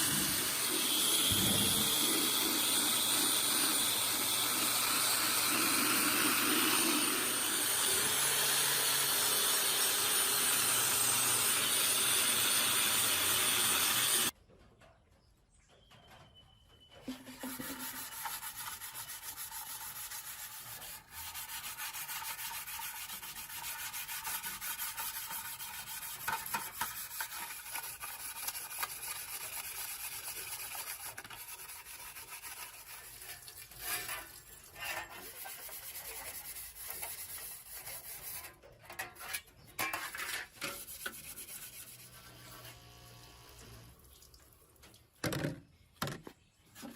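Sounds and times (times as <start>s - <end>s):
machine hissing and whining: 0.0s - 14.3s.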